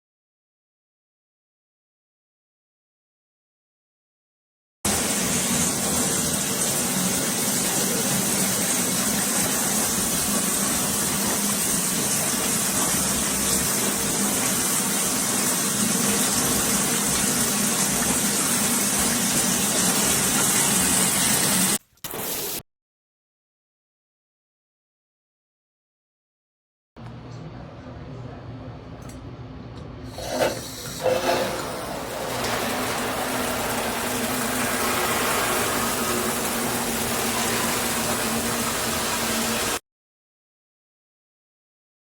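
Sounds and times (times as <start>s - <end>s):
water spraying from shower head: 4.9s - 22.6s, 32.1s - 39.8s.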